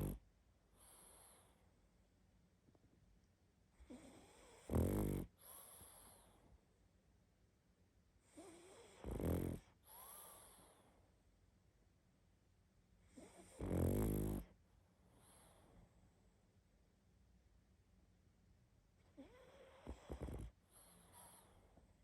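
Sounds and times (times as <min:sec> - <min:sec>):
dog snoring: 0:00.0 - 0:00.2, 0:00.8 - 0:01.6, 0:03.8 - 0:06.4, 0:08.2 - 0:10.9, 0:13.1 - 0:14.6, 0:19.1 - 0:21.6.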